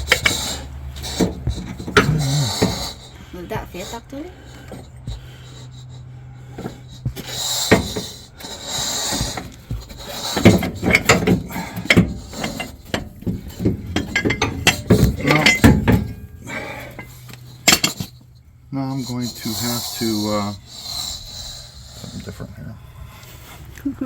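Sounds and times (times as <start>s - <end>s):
tools and metal parts clinking: 0.0s - 3.0s, 9.1s - 18.4s.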